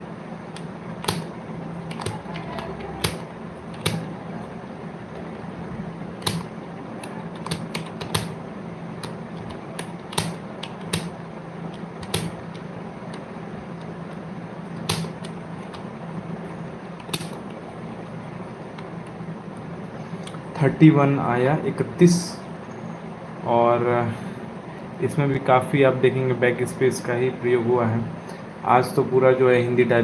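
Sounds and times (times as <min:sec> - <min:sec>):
steady low hum: 0:00.0 - 0:30.0
keyboard keys clicking: 0:00.5 - 0:04.1, 0:06.2 - 0:08.4, 0:09.0 - 0:12.6, 0:14.8 - 0:15.8.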